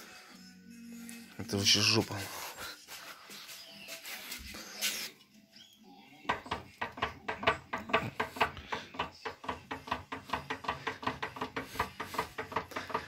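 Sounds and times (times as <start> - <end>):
rapid metallic clacking: 6.4 - 13.0.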